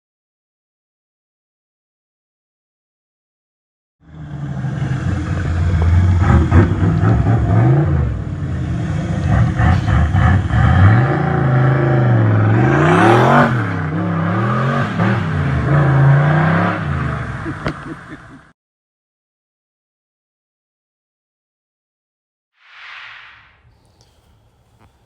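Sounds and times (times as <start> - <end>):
car engine revving: 4.1 - 18.0
sharp rising whine: 22.6 - 24.9.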